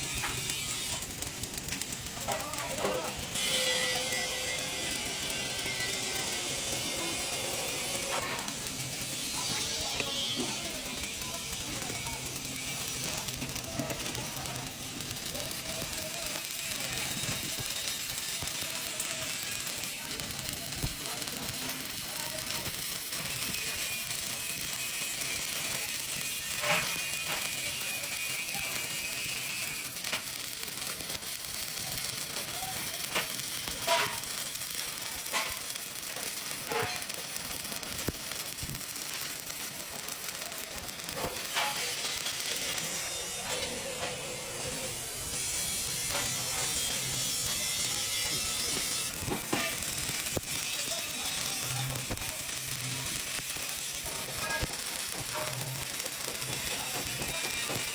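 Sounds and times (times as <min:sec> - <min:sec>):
welding arc hissing: 0:00.0 - 0:57.9.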